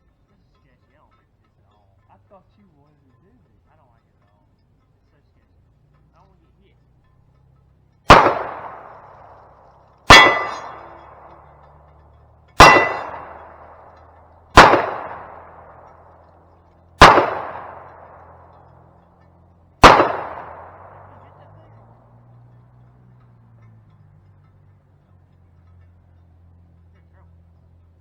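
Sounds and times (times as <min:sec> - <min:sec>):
pistol shots: 0:08.1 - 0:11.6, 0:12.6 - 0:16.4, 0:17.0 - 0:18.7, 0:19.8 - 0:21.6
steel plate ringing: 0:08.1 - 0:23.8.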